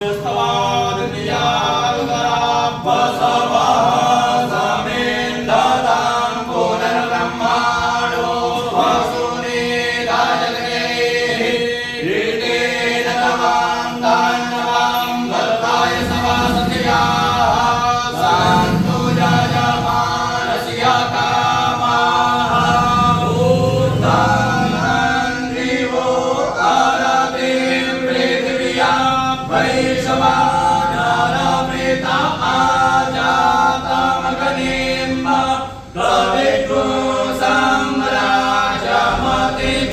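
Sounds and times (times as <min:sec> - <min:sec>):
voices chanting: 0:00.0 - 0:39.9.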